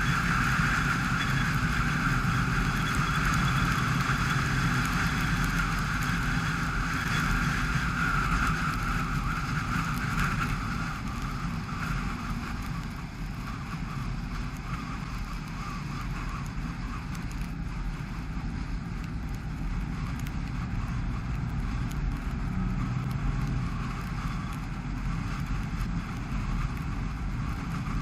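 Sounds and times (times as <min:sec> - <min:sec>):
tyres hissing on wet road: 0:00.0 - 0:28.0.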